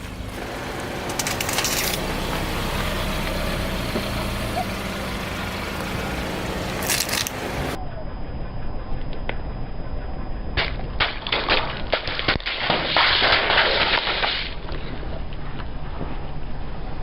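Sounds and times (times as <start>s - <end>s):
low car rumble: 0.0s - 12.3s
objects crunching under car tyre: 0.4s - 4.1s, 6.7s - 7.4s, 10.6s - 15.2s.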